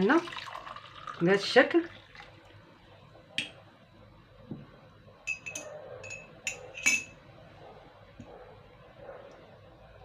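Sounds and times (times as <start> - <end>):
glass cup clinking: 5.3 - 7.2.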